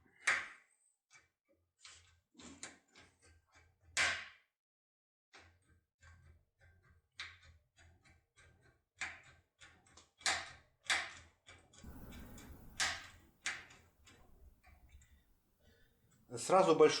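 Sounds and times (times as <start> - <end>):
low handling rumble: 11.9 - 13.5.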